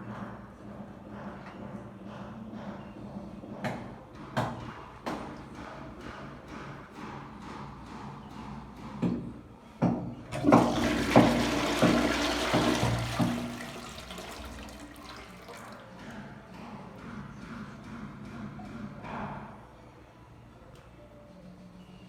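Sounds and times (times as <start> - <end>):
knocks in toilet plumbing: 8.9 - 15.8
toilet flushing water rushing: 10.2 - 16.1.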